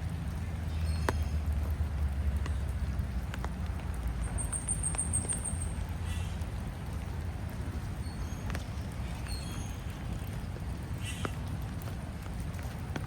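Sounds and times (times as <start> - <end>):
rainwater dripping: 0.0 - 13.0.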